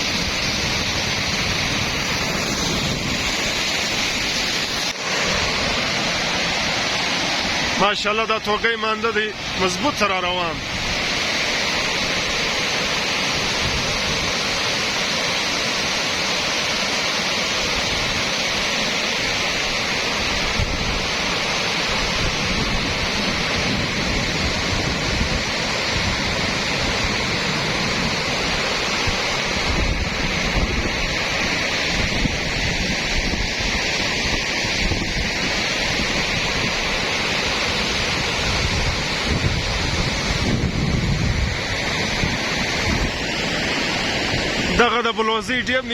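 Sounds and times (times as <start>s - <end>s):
water rushing down a stream: 0.0s - 45.9s
wind buffeting microphone: 22.0s - 37.1s, 37.7s - 43.4s.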